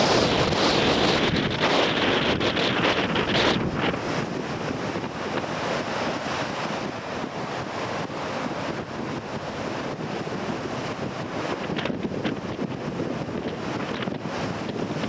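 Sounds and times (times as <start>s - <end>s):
waves breaking on rocks: 0.0s - 15.0s
wind buffeting microphone: 0.0s - 15.0s.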